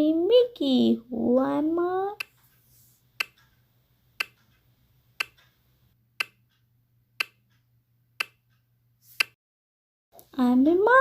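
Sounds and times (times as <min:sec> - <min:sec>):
clock ticking: 0:02.2 - 0:02.6, 0:03.2 - 0:09.4.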